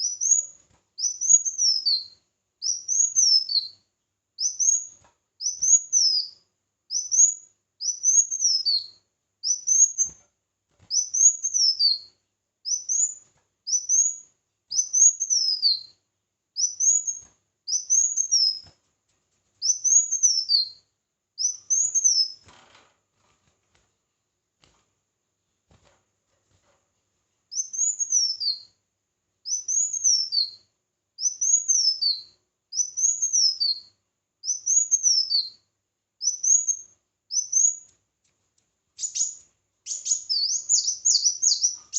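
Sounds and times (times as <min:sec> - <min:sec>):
songbird singing: 0:00.0 - 0:03.8, 0:04.4 - 0:10.1, 0:19.6 - 0:20.8, 0:27.5 - 0:28.8, 0:29.4 - 0:35.6, 0:39.0 - 0:41.9.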